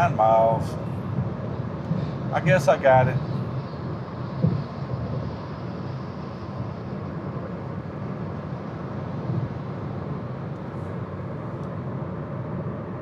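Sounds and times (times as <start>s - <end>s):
tyre and wind noise in car: 0.0s - 13.0s.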